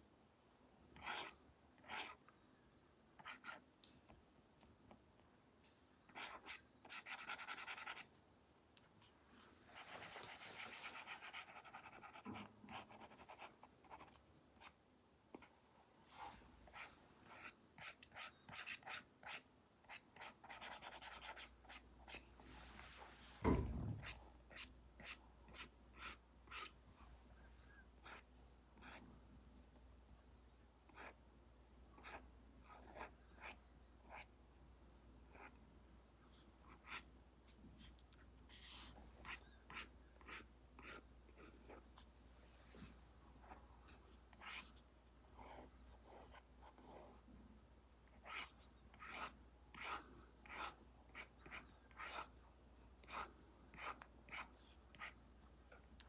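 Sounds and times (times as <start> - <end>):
dull thump: 23.3 - 24.1.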